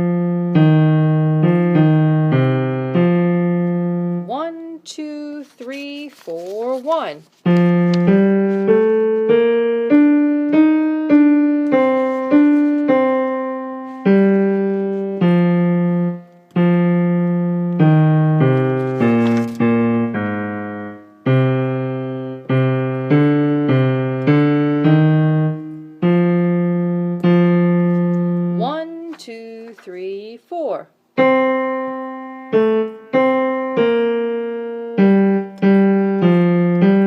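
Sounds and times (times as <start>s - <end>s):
piano playing two voices: 0.0s - 4.6s, 6.9s - 29.8s, 31.1s - 37.0s.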